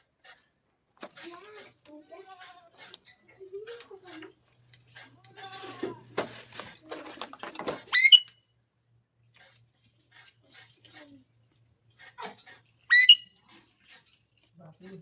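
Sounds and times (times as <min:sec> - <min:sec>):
parrot screech: 0:07.9 - 0:08.3, 0:12.9 - 0:13.3
parrot chattering: 0:12.9 - 0:13.3.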